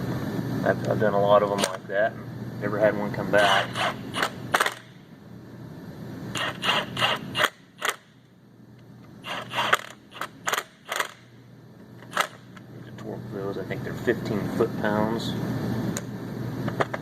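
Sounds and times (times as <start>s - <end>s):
ratchet wrench clicking: 9.2s - 11.2s.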